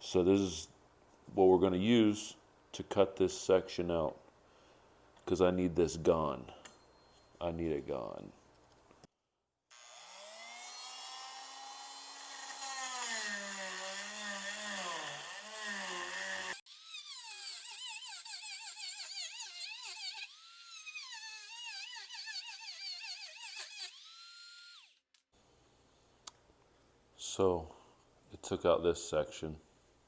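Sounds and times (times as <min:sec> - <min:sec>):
oscillating multi-tool cutting wood: 0:09.7 - 0:25.2.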